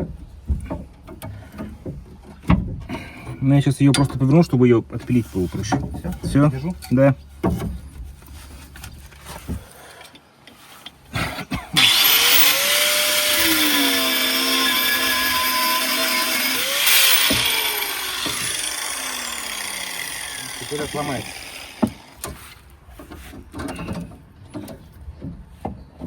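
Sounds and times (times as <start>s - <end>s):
angle grinder cutting metal: 11.8s - 22.3s
knocks: 21.7s - 22.4s.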